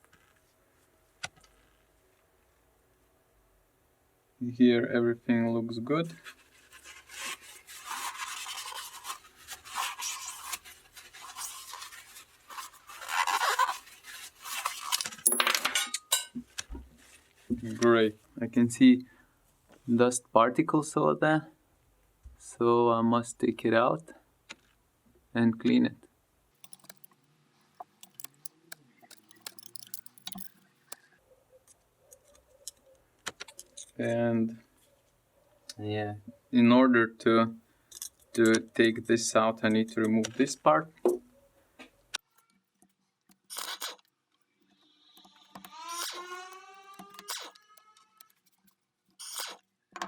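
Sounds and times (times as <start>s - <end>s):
scratchy rubbing of metal parts: 6.4s - 15.2s, 26.6s - 30.8s, 43.3s - 44.1s, 44.8s - 49.6s
metallic clink: 15.2s - 16.4s, 26.6s - 27.2s, 27.8s - 30.7s
faint clicks and taps of tools: 26.6s - 27.2s, 27.8s - 31.0s, 41.8s - 48.8s.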